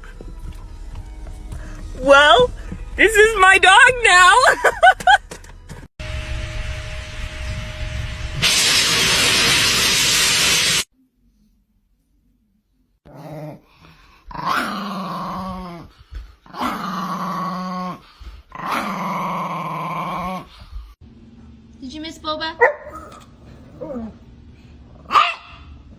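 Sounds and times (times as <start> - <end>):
loud rushing noise: 6.0 - 10.9.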